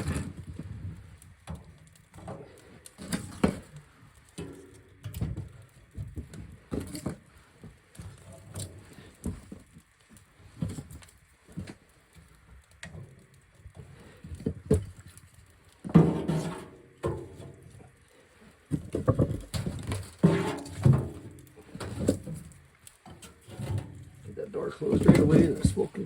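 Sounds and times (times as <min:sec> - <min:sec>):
firewood knocking in stove: 0:01.4 - 0:07.2, 0:15.8 - 0:17.7, 0:18.7 - 0:22.5, 0:24.8 - 0:26.0.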